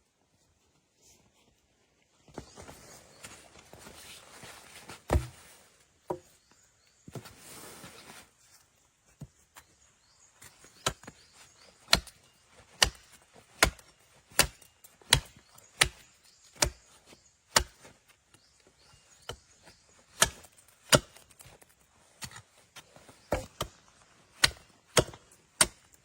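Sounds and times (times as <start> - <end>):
axe chopping wood: 5.1 - 5.4, 11.8 - 16.9, 17.5 - 17.8, 19.2 - 21.6, 23.2 - 26.0.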